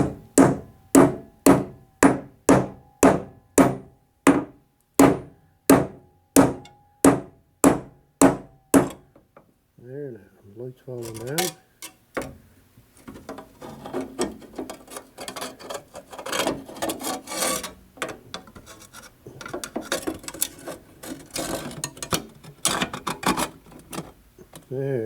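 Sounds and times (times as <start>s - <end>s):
metal scraping and knocking: 0.0s - 3.8s, 13.0s - 24.6s.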